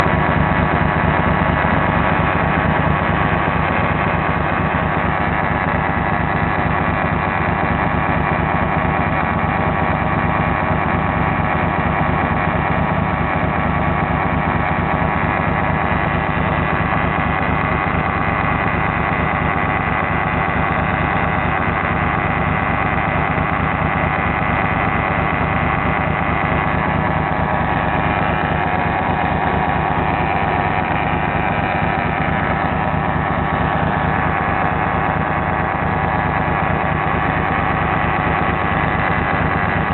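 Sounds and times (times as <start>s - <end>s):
engine idling: 0.0s - 39.9s.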